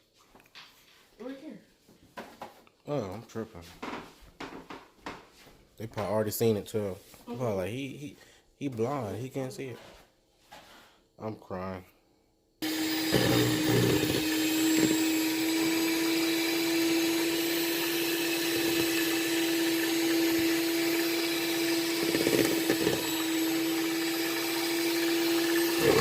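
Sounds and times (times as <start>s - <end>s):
electric hand mixer whine: 12.6s - 26.0s
mixer bumping bowl: 12.6s - 26.0s.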